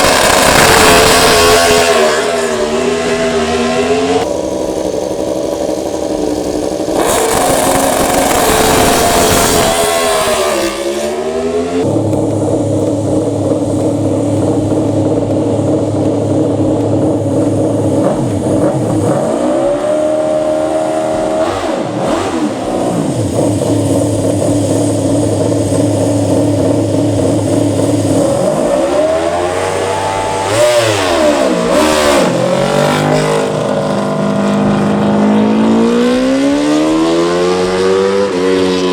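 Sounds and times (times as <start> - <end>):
racing motorcycle engine revving: 0.0 - 38.9.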